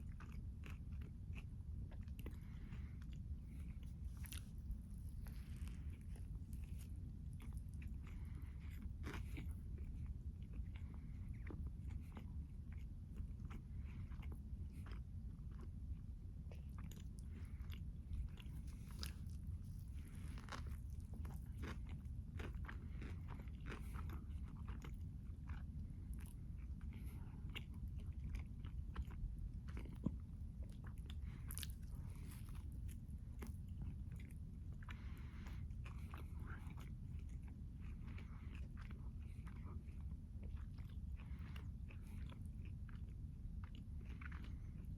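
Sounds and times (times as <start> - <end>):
low background hum: 0.0 - 44.9
person chewing crunchily: 0.0 - 44.9.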